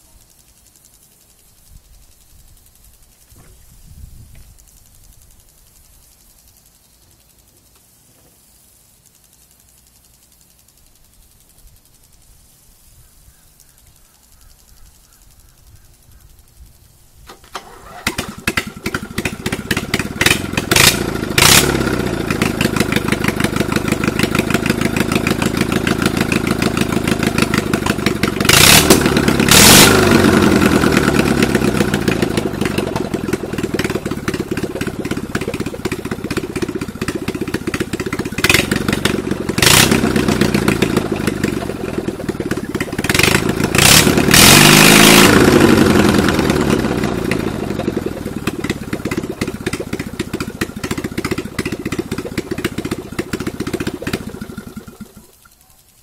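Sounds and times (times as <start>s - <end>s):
small engine revving: 17.3s - 55.5s.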